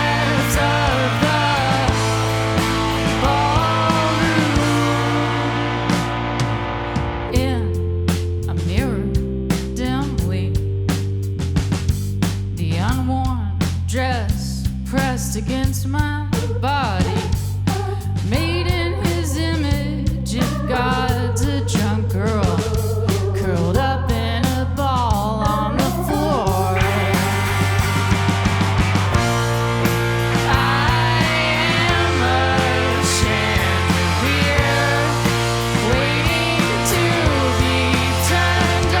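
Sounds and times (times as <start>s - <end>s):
lead guitar line bending in pitch: 0.0s - 8.0s
drums keeping a steady beat: 0.0s - 8.9s, 10.9s - 39.0s
bass and guitars: 0.0s - 39.0s.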